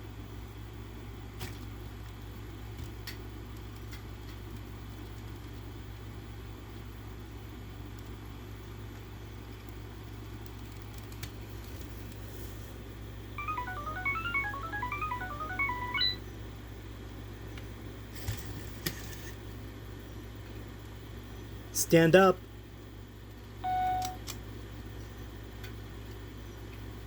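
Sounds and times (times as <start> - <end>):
robot dog beeping melody: 13.4 - 16.2.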